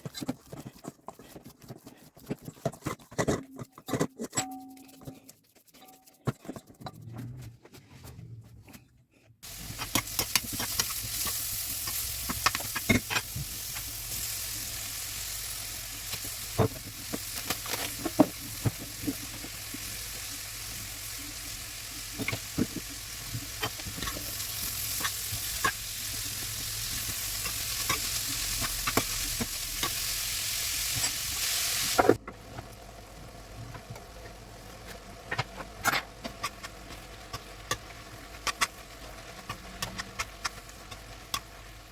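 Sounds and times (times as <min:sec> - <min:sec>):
food sizzling in hot oil: 0:09.4 - 0:33.6.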